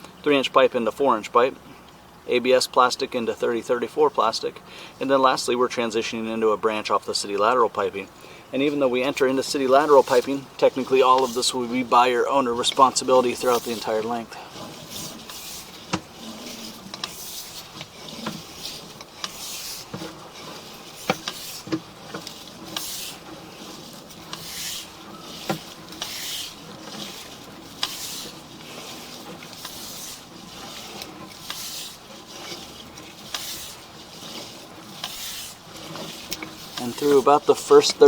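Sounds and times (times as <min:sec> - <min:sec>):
water running through pipe: 0:08.1 - 0:38.0
sharp clicks and knocks: 0:12.6 - 0:38.0.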